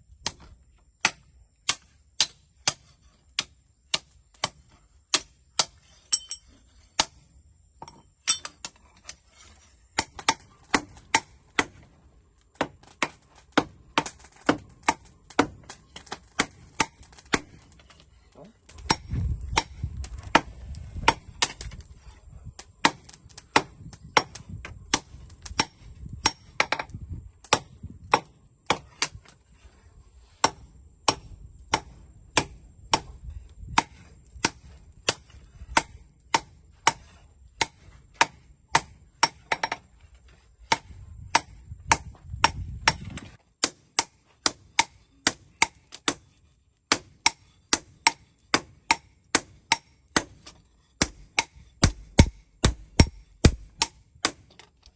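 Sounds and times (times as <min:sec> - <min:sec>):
hammer striking steel on anvil: 0:06.1 - 0:07.1, 0:07.8 - 0:08.6, 0:51.0 - 0:54.0.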